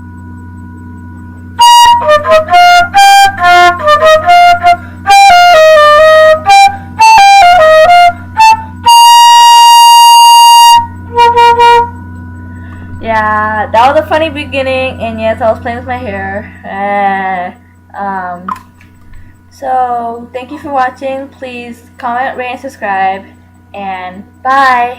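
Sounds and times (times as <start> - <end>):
low steady hum: 0.0 - 24.9
solo flute melody: 1.4 - 12.4.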